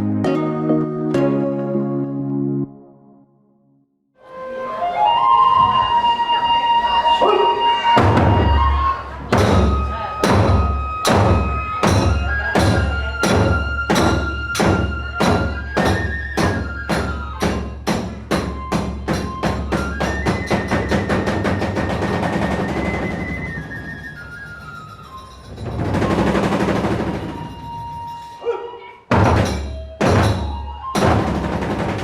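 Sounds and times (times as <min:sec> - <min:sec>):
flute holding long notes: 0:04.2 - 0:29.0, 0:29.6 - 0:32.0
drum strokes speeding into a roll: 0:09.3 - 0:28.0, 0:29.1 - 0:32.0.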